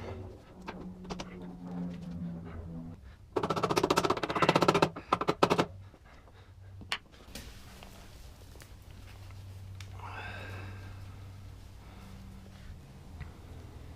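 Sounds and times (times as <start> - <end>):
socket ratchet clicking: 3.4 - 5.7.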